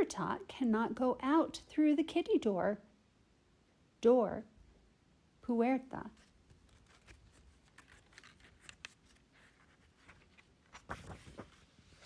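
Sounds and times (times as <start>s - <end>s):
soft rustle: 6.0s - 12.0s.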